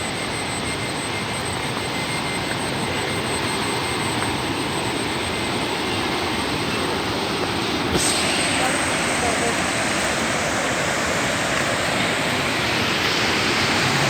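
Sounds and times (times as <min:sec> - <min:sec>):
thin high whine: 0:00.0 - 0:14.0
rushing roar of water: 0:06.9 - 0:14.0.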